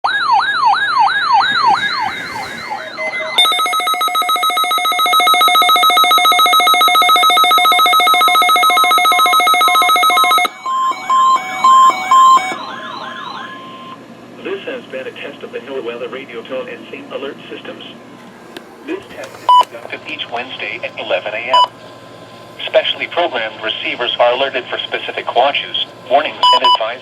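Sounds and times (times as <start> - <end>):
pulsing alarm tone: 0.1 - 14.0
yelping electronic siren: 0.1 - 14.0
short beeps: 1.5 - 14.0.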